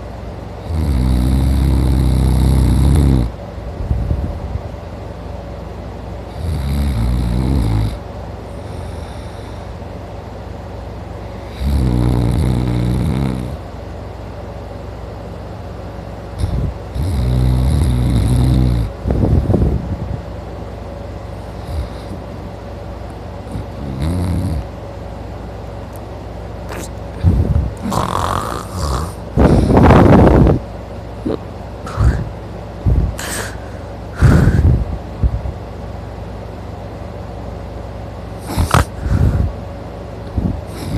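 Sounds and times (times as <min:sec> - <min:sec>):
man snoring loudly: 0:00.6 - 0:03.3, 0:06.3 - 0:08.0, 0:11.5 - 0:13.6, 0:16.4 - 0:18.9, 0:23.5 - 0:24.6, 0:27.8 - 0:30.0, 0:31.3 - 0:32.3, 0:38.4 - 0:39.5, 0:40.7 - 0:40.9.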